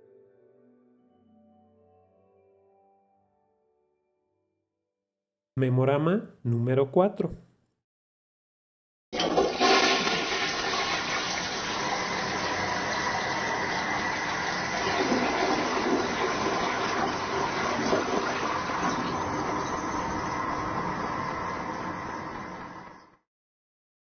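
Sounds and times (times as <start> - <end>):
toilet flushing: 9.2 - 23.2.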